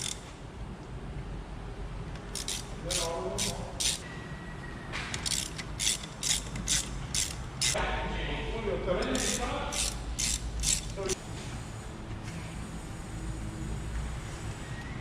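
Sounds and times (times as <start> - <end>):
hand ratchet clicking: 0.0 - 0.3, 2.2 - 4.0, 5.1 - 7.8, 9.0 - 11.2.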